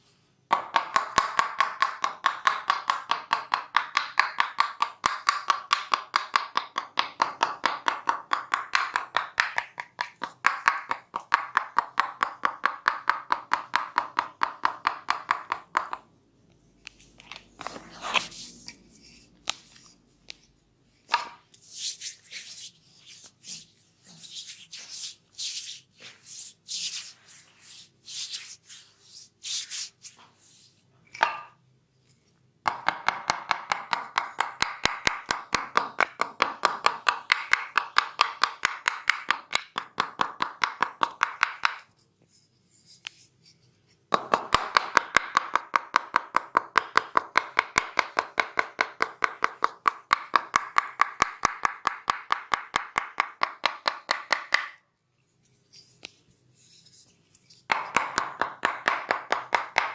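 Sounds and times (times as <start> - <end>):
hands rubbing over skin: 16.9 - 20.4, 21.6 - 30.8.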